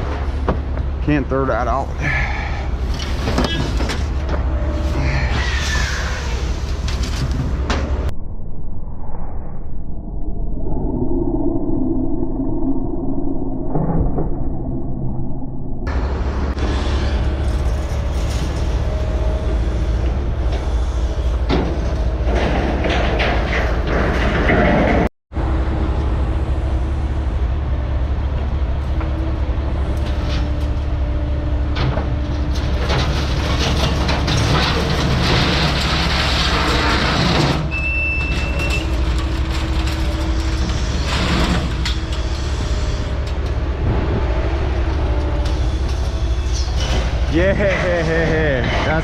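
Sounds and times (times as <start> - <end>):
diesel engine rumbling: 0.0 - 8.1, 38.7 - 49.0
scrap metal clanking and scraping: 2.9 - 5.4, 16.6 - 25.1, 31.8 - 43.4.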